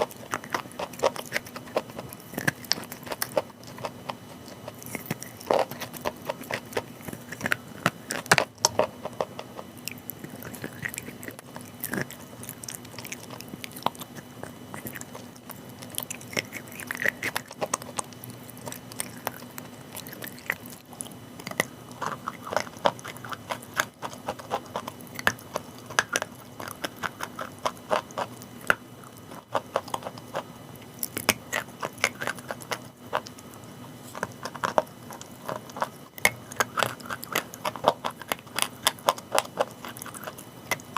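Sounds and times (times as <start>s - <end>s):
chalk being chewed: 0.0s - 40.9s.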